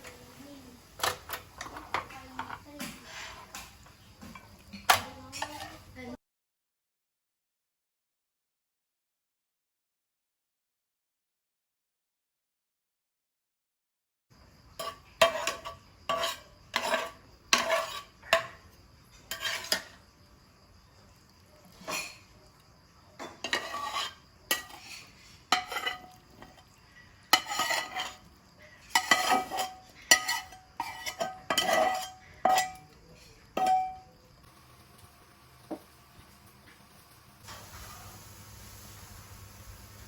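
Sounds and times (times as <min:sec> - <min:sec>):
metal utensil scraping cookware: 0:01.0 - 0:06.0, 0:14.8 - 0:20.0, 0:21.7 - 0:22.3, 0:23.2 - 0:34.1.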